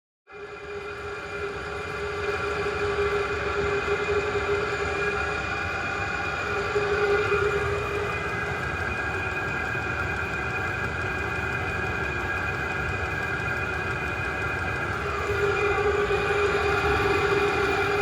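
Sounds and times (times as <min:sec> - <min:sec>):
diesel air heater running: 0:06.4 - 0:18.0.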